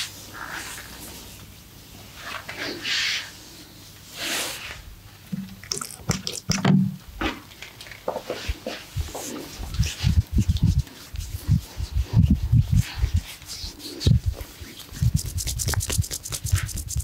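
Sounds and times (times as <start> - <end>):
hands swishing on skin: 9.2 - 17.0.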